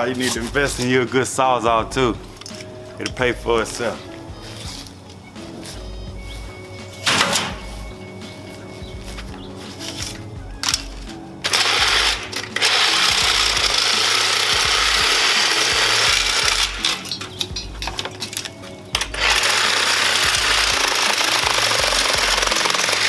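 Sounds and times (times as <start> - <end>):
reciprocating saw cutting metal: 11.4 - 17.6, 19.0 - 23.0.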